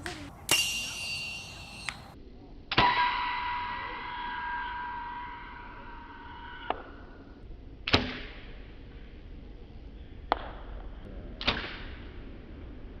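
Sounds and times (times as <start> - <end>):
arrows striking targets: 0.0 - 3.0, 7.9 - 8.4.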